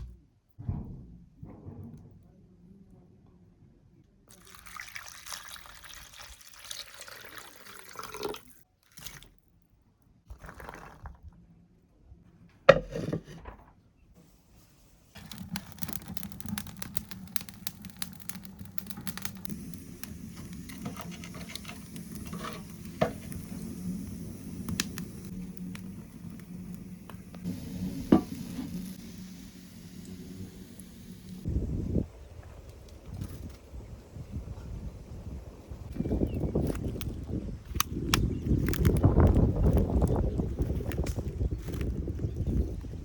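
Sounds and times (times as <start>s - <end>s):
water pouring: 4.3s - 9.4s, 10.3s - 11.3s, 15.2s - 31.5s
sizzling with small crackles: 14.2s - 31.6s, 35.9s - 42.9s.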